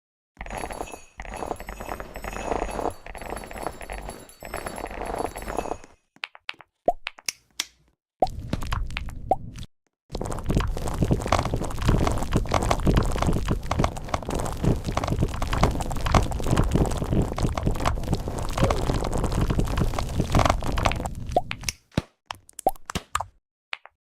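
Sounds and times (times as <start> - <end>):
fast keyboard typing: 0.4 - 6.0, 10.2 - 21.1.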